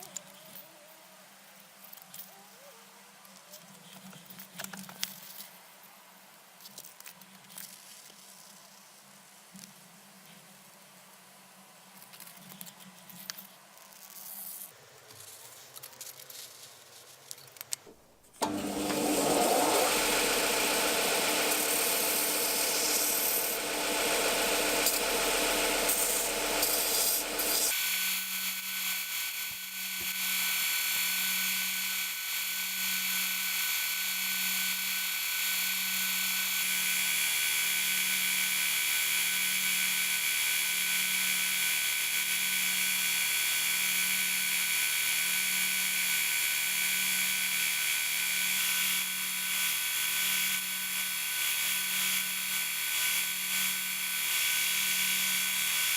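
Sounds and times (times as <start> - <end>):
power tool abrasive rubbing: 18.4 - 29.0.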